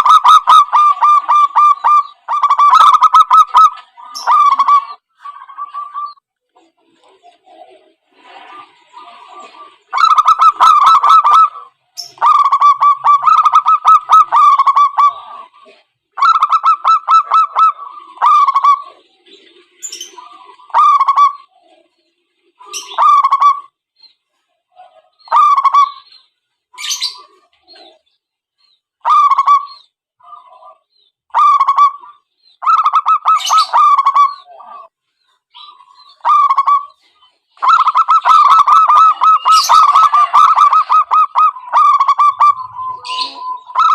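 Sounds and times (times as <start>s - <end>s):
doves cooing: 0.0s - 23.8s, 24.7s - 28.2s, 29.0s - 43.9s.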